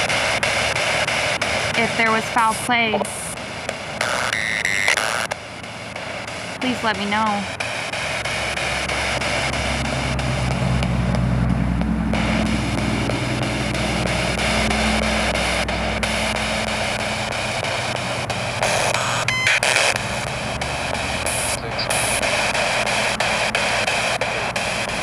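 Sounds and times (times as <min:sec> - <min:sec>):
radio static hiss: 0:00.0 - 0:25.0
low engine hum: 0:07.4 - 0:25.0.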